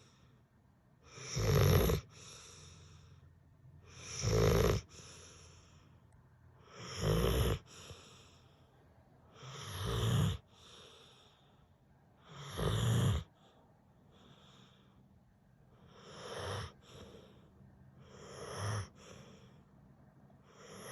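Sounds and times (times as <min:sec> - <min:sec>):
quiet breathing: 0:00.0 - 0:20.9
person snoring: 0:01.1 - 0:02.9, 0:03.9 - 0:05.6, 0:06.7 - 0:08.0, 0:09.4 - 0:11.0, 0:12.3 - 0:13.4, 0:15.9 - 0:17.3, 0:18.1 - 0:19.5, 0:20.6 - 0:20.9.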